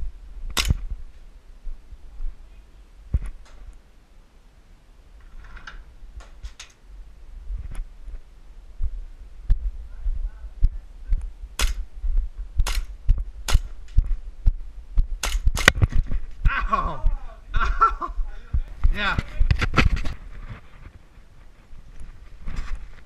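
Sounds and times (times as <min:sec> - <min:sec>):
airsoft pistol shots: 0:00.6 - 0:00.8, 0:11.6 - 0:11.9, 0:12.6 - 0:13.7, 0:15.2 - 0:15.8.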